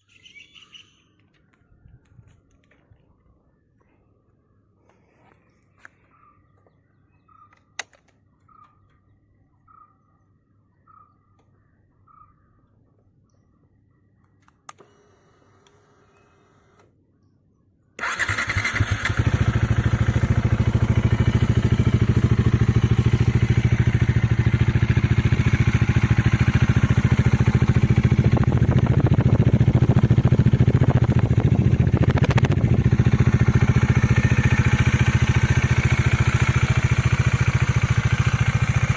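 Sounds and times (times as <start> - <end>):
starter click and whirring: 14.4 - 17.0, 18.0 - 19.4, 32.0 - 32.6
motorcycle engine idling: 18.0 - 38.9.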